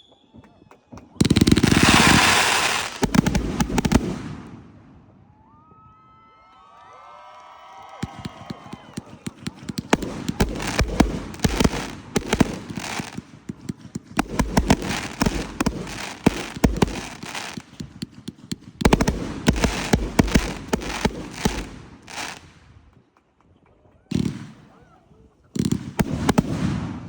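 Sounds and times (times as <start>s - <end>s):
fireworks bangs and crackles: 0.1s - 6.0s, 7.9s - 23.3s, 24.1s - 27.0s
fireworks deep booms: 1.1s - 5.5s, 8.0s - 22.8s, 25.6s - 27.0s.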